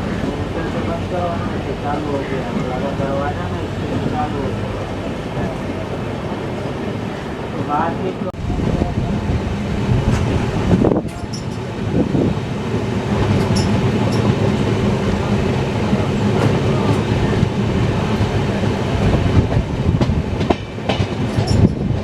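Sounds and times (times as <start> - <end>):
train rumble and rush: 0.0 - 22.0
wheels clattering over rails: 9.9 - 22.0.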